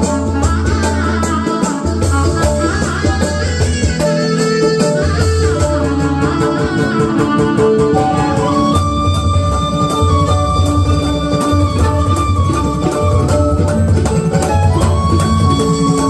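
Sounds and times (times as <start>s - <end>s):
steady beat: 10.0s - 16.0s.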